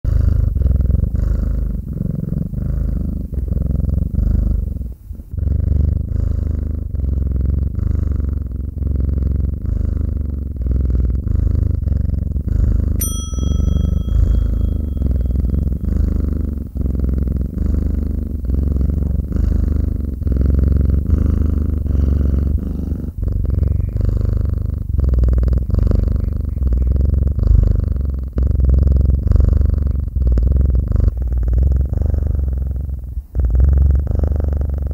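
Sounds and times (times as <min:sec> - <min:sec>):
cat purring: 0:00.0 - 0:34.9
bright ding: 0:13.0 - 0:15.7.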